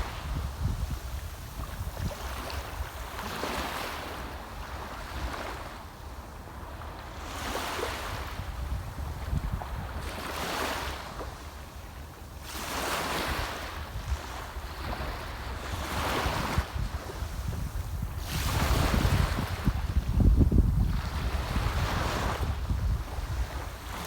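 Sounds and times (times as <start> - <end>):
wind buffeting microphone: 0.0 - 3.2, 8.1 - 10.1, 13.9 - 24.0
sea waves washing ashore: 0.0 - 24.0.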